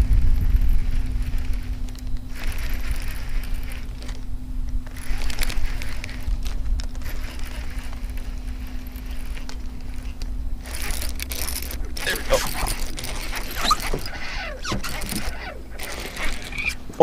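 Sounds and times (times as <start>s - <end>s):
electric motor humming: 0.0s - 17.0s
low rumble: 0.0s - 17.0s
clicks and rattles: 4.8s - 17.0s.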